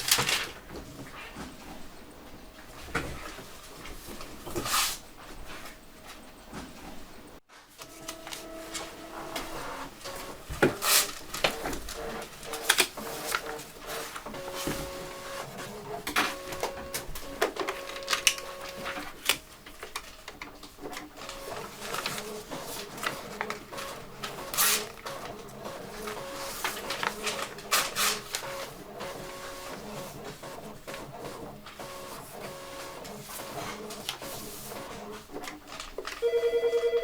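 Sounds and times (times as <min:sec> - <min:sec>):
office clicks and clatter: 0:00.0 - 0:01.9, 0:07.7 - 0:36.3
electronic beeping tones: 0:36.2 - 0:37.0.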